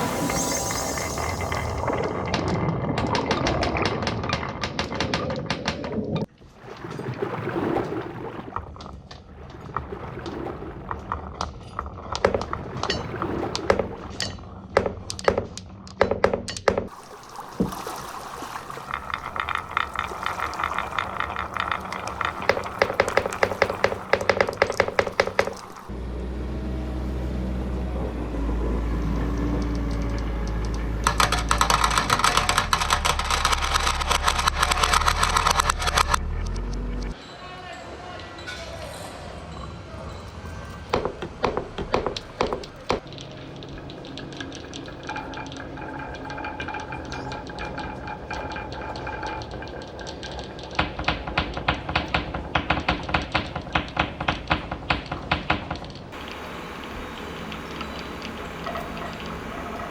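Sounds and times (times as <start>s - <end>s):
low hum: 0.0s - 4.6s, 18.7s - 32.0s
marbles clattering on wood: 1.2s - 6.3s, 18.8s - 25.9s, 29.6s - 36.7s, 40.9s - 56.2s.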